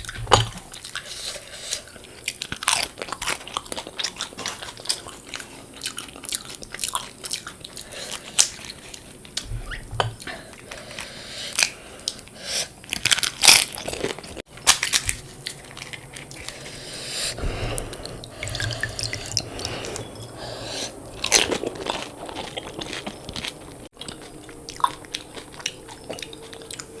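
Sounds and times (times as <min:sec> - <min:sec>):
chewing: 0:00.0 - 0:27.0
crisp shells crunching: 0:11.5 - 0:16.8, 0:21.2 - 0:27.0.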